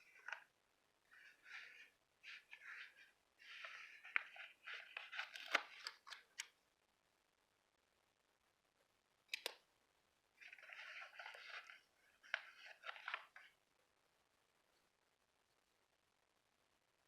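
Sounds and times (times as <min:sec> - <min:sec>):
paper and stickers rustling: 0:00.0 - 0:00.5, 0:01.2 - 0:06.4, 0:10.4 - 0:13.6
sharp clicks: 0:09.3 - 0:09.6.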